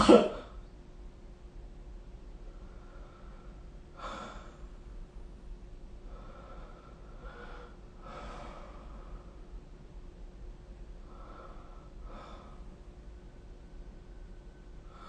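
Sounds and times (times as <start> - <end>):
sleeping person breathing noisily: 6.1 - 9.4, 11.0 - 12.8.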